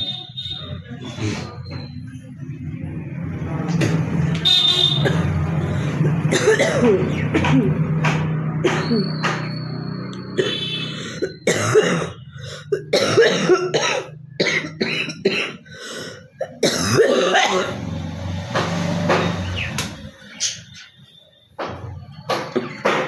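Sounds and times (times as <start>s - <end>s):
woman coughing: 6.3s - 7.7s, 10.4s - 15.6s, 16.4s - 17.8s
woman clearing her throat: 6.3s - 7.8s, 10.4s - 15.6s, 16.4s - 17.8s.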